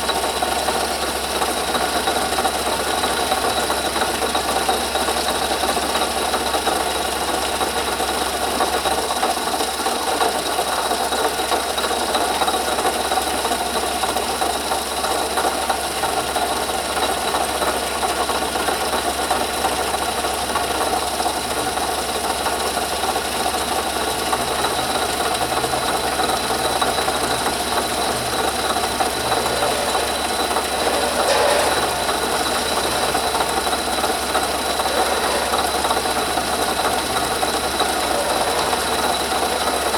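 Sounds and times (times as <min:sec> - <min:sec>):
engine running: 0:22.8 - 0:39.9
water pump bearing scraping and rattling: 0:24.8 - 0:39.9
thin high whine: 0:28.0 - 0:39.9.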